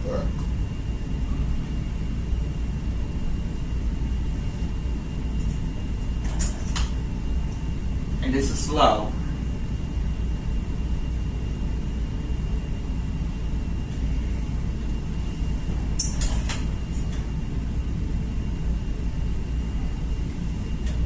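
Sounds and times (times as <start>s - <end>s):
ceiling fan rumbling: 0.0s - 21.0s.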